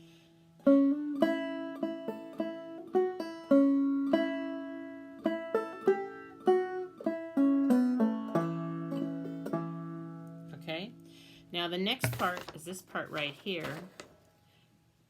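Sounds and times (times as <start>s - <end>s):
banjo playing fiddle tune: 0.0s - 10.6s.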